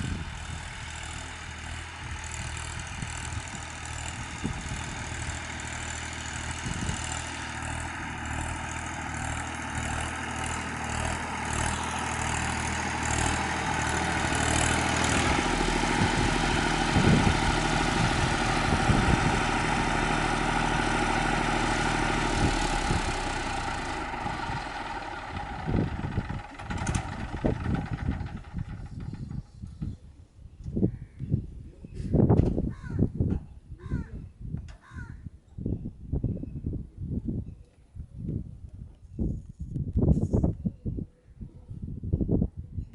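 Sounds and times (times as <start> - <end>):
tractor engine running: 0.0 - 30.1.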